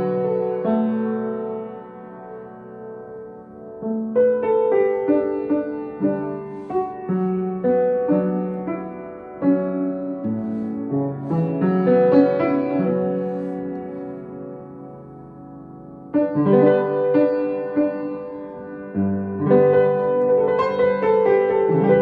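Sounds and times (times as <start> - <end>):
slow gentle piano piece: 0.0 - 22.0.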